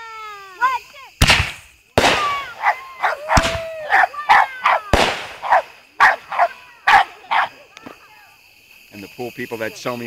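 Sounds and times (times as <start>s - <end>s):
fireworks bangs: 1.1s - 7.2s
dog barking and yelping: 2.5s - 7.6s.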